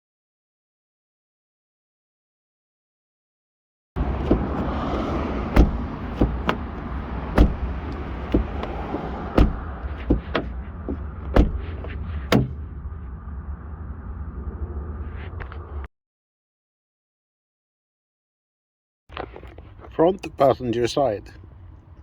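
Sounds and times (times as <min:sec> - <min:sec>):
clicks and knocks at car door: 0:04.0 - 0:12.6
steady low rumble: 0:04.0 - 0:15.9.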